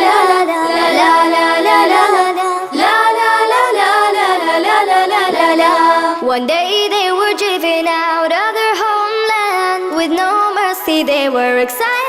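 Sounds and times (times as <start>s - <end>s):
woman singing la la la: 4.7s - 12.0s.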